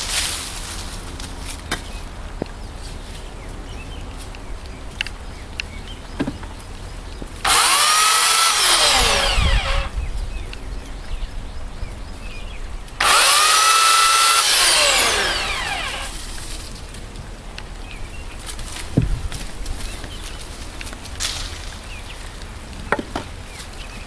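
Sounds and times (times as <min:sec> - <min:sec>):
electric chainsaw motor whine: 0:07.4 - 0:10.0, 0:13.0 - 0:16.2.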